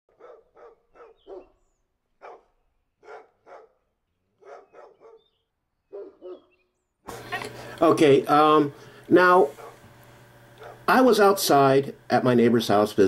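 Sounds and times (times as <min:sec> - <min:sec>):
dog barking: 0:00.1 - 0:01.6, 0:02.2 - 0:06.6, 0:09.5 - 0:09.8, 0:10.6 - 0:10.9.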